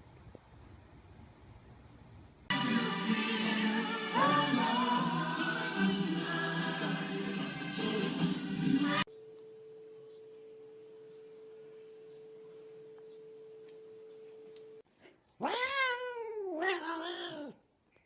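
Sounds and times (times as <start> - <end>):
faint steady tone hum: 9.0 - 15.4
cat yowling meow: 15.4 - 17.6.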